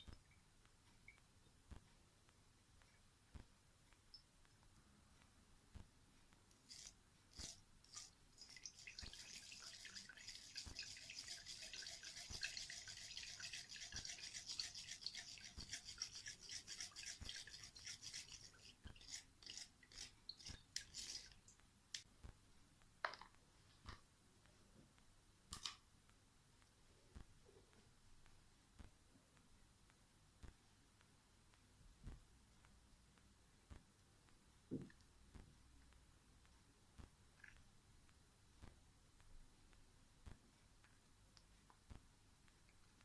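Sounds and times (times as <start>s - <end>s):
fast scratchy rubbing: 6.7s - 21.3s
light clicks and taps: 21.5s - 43.0s.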